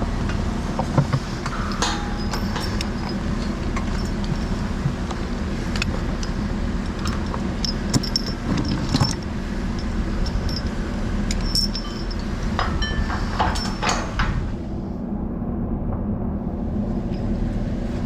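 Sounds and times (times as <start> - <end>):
low machine drone: 0.0 - 18.0
metal hardware clinking: 1.4 - 14.4.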